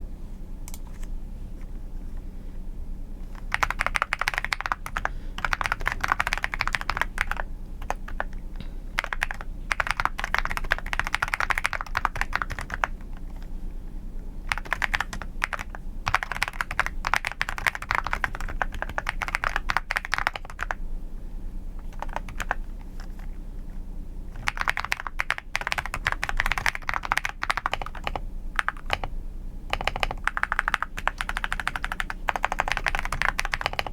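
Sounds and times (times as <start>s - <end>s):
typing on computer keyboard: 3.3s - 8.4s, 9.0s - 13.5s, 14.5s - 20.8s, 21.8s - 23.3s, 24.4s - 29.1s, 29.7s - 33.9s.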